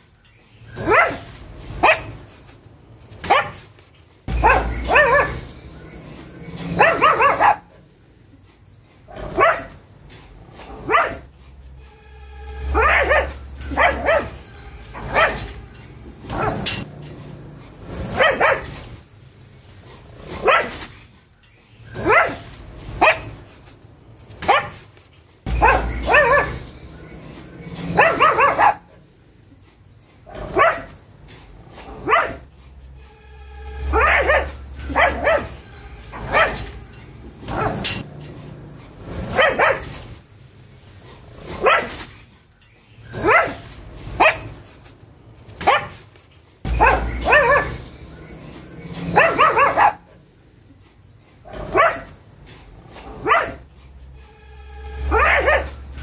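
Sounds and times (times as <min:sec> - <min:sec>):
dog barking: 0:00.7 - 0:02.2, 0:03.2 - 0:03.6, 0:04.3 - 0:05.7, 0:06.6 - 0:07.8, 0:09.1 - 0:09.8, 0:10.6 - 0:11.3, 0:12.7 - 0:15.6, 0:16.2 - 0:16.9, 0:18.0 - 0:18.8, 0:20.3 - 0:20.8, 0:21.9 - 0:23.4, 0:24.4 - 0:24.8, 0:25.5 - 0:26.8, 0:27.9 - 0:28.9, 0:30.3 - 0:31.0, 0:31.8 - 0:32.5, 0:33.8 - 0:36.8, 0:37.4 - 0:38.0, 0:39.2 - 0:40.0, 0:41.5 - 0:42.0, 0:43.1 - 0:44.6, 0:45.6 - 0:46.0, 0:46.7 - 0:48.3, 0:49.0 - 0:50.1, 0:51.5 - 0:52.2, 0:53.0 - 0:53.6, 0:55.0 - 0:55.8.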